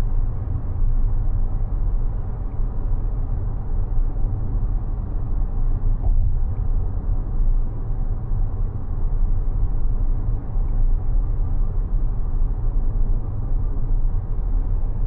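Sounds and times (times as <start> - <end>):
car road and tyre rumble: 0.0 - 15.0.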